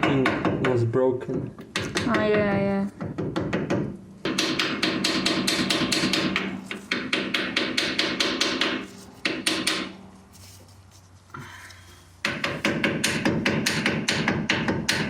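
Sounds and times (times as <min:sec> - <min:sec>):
hammer tapping on metal: 0:00.0 - 0:00.8, 0:01.6 - 0:10.0, 0:12.2 - 0:15.0.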